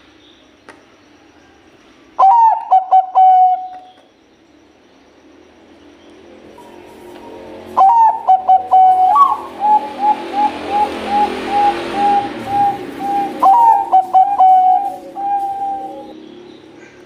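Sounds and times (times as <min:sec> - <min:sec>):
dove cooing: 0:02.2 - 0:03.9, 0:06.6 - 0:17.0.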